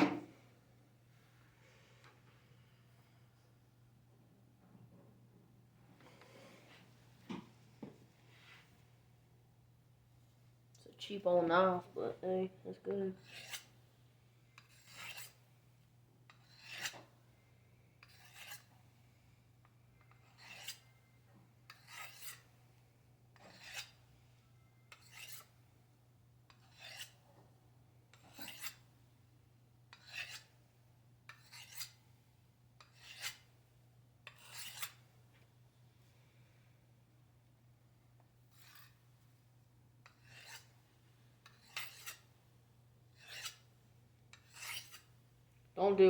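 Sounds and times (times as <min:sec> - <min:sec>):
knife scraping on sharpener: 0:13.2 - 0:13.8, 0:14.6 - 0:15.5, 0:16.3 - 0:17.1, 0:18.0 - 0:18.7, 0:20.0 - 0:20.9, 0:21.7 - 0:22.5, 0:23.4 - 0:24.0, 0:24.9 - 0:25.6, 0:26.5 - 0:27.2, 0:28.1 - 0:28.8, 0:29.9 - 0:30.6, 0:31.3 - 0:32.0, 0:32.8 - 0:33.5, 0:34.2 - 0:35.0, 0:38.5 - 0:39.0, 0:40.0 - 0:40.8, 0:41.4 - 0:42.3, 0:43.2 - 0:43.7, 0:44.3 - 0:45.1.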